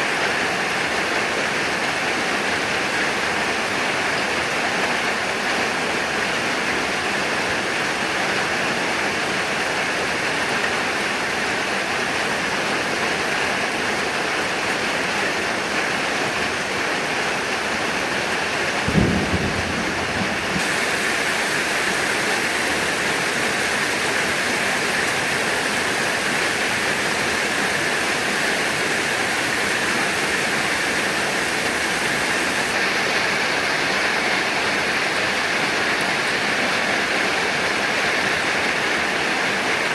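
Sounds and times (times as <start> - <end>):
heavy rain falling: 0.0 - 39.9
low rumble of thunder: 18.8 - 21.5.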